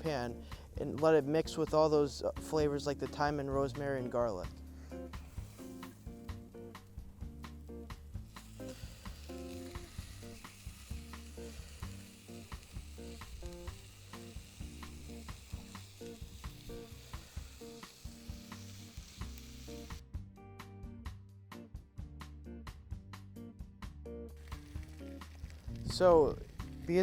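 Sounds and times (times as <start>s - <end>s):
background music with a beat: 0.0s - 27.0s
steak sizzling in a pan: 5.0s - 20.0s, 24.3s - 27.0s.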